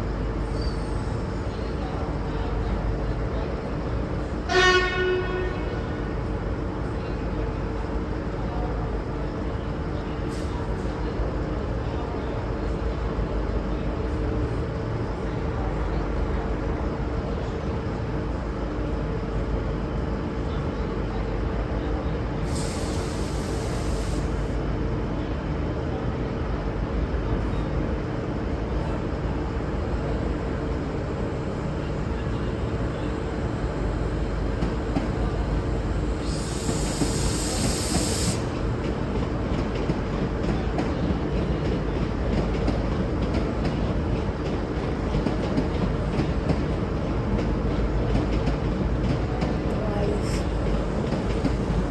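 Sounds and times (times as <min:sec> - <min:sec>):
diesel railcar droning: 0:00.0 - 0:42.4
air hiss bursts: 0:22.5 - 0:24.5, 0:36.2 - 0:38.6.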